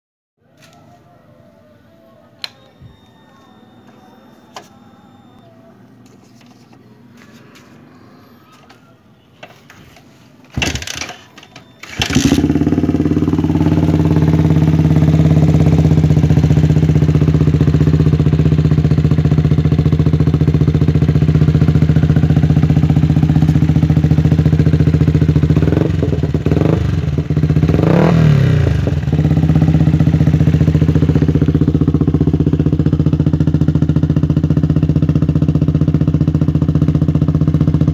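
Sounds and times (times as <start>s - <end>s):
motorcycle engine starting and idling: 6.7s - 37.9s
motorcycle throttle blips: 8.2s - 37.9s.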